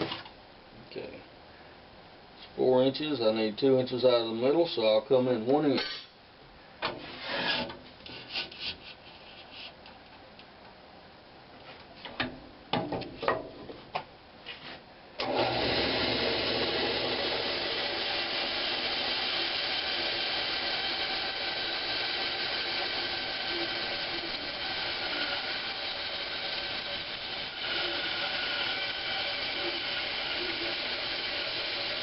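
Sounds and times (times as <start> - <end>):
table saw running: 15.2 - 32.0.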